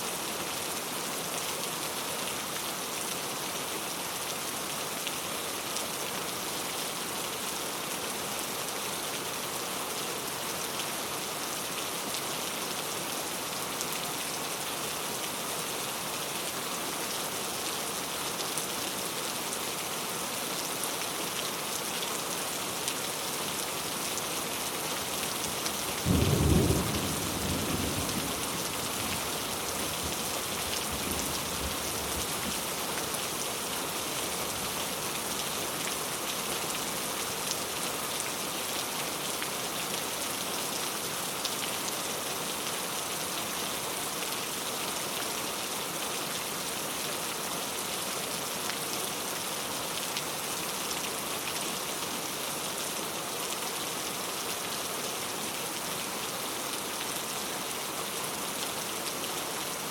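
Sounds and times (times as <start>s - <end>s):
heavy rain pattering: 23.6s - 38.3s.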